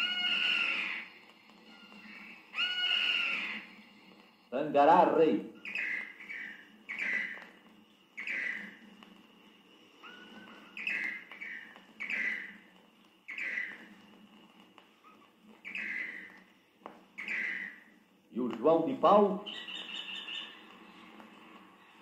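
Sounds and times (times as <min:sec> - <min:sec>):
bird calling sharp notes: 0:00.0 - 0:01.2, 0:01.9 - 0:03.7, 0:05.5 - 0:08.9, 0:10.0 - 0:14.0, 0:15.0 - 0:16.5, 0:17.1 - 0:18.0, 0:19.3 - 0:21.0.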